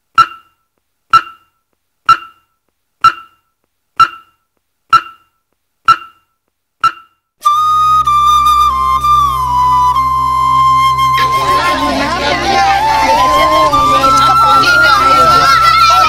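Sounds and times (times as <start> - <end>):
flute music: 7.4 - 16.0.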